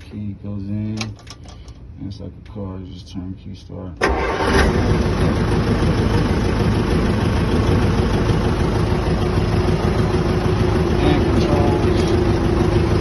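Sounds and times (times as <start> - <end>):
diesel engine idling: 4.0 - 13.0.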